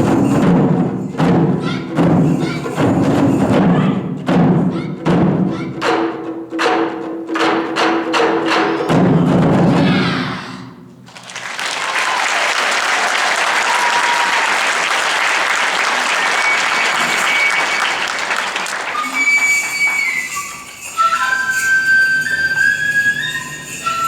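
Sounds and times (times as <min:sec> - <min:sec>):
audience applauding: 0:11.1 - 0:21.0
high flute playing held notes: 0:18.8 - 0:24.0.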